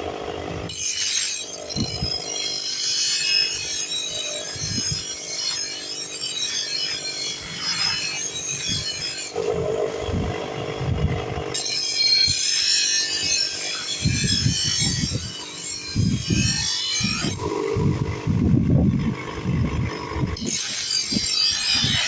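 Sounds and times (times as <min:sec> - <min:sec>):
scraping on a knife blade: 0:00.7 - 0:09.4, 0:11.5 - 0:17.8, 0:20.4 - 0:22.0
steady hum: 0:09.3 - 0:11.5, 0:17.2 - 0:20.4.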